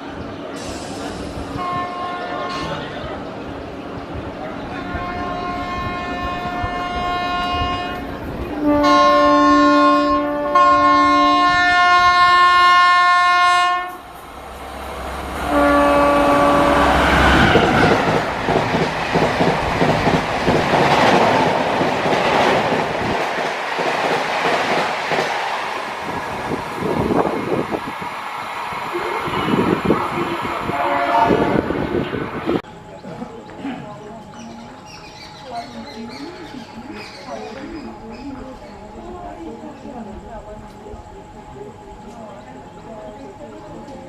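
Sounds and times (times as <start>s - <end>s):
locomotive horn blasts: 1.6s - 2.8s, 4.8s - 14.0s, 15.4s - 17.8s, 30.7s - 32.0s
train wheels clattering on rails: 16.9s - 29.8s.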